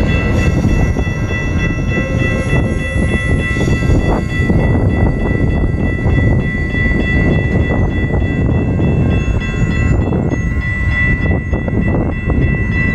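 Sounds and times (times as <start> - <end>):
railroad crossing bell ringing: 0.0 - 12.9
wind buffeting microphone: 0.0 - 12.9.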